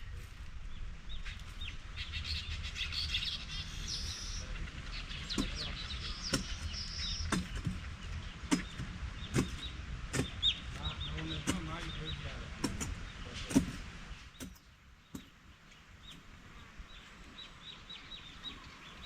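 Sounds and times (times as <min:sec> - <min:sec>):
small birds chirping: 0:00.0 - 0:19.0
sharp knocks: 0:05.3 - 0:07.9, 0:08.5 - 0:12.0, 0:12.6 - 0:15.3.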